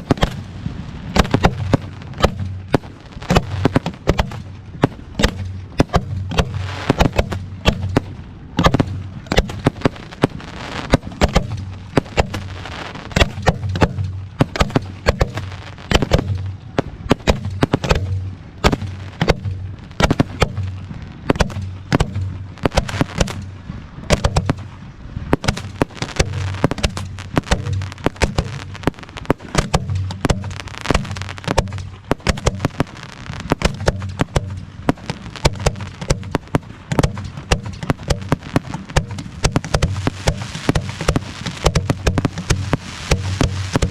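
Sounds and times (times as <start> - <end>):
fireworks bangs and crackles: 0.0 - 43.9.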